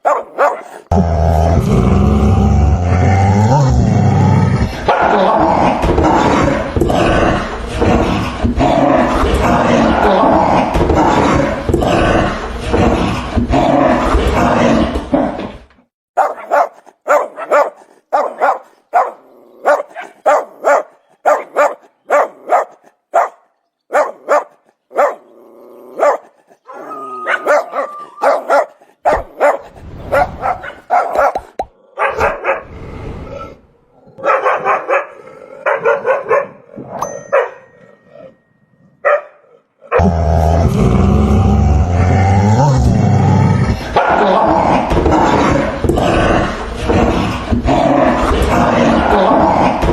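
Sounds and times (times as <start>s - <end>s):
deep heavy dog barks: 0.0s - 0.9s, 16.2s - 25.3s, 26.0s - 26.3s, 27.3s - 32.8s, 34.2s - 36.7s, 39.0s - 40.2s
dog barking: 0.0s - 0.9s, 16.2s - 25.3s, 26.0s - 32.7s, 34.2s - 36.7s, 39.0s - 40.0s
loud continuous dog sound: 0.0s - 0.9s, 16.2s - 25.3s, 26.0s - 32.7s, 34.2s - 36.7s, 39.0s - 40.0s.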